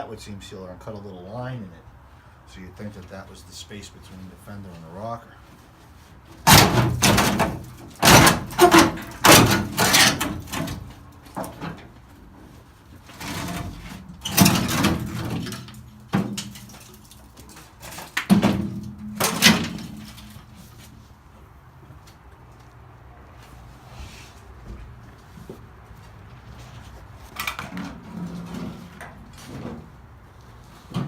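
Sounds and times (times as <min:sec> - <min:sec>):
sheet metal banging and scraping: 0:06.4 - 0:11.9, 0:13.1 - 0:17.2, 0:17.8 - 0:20.8.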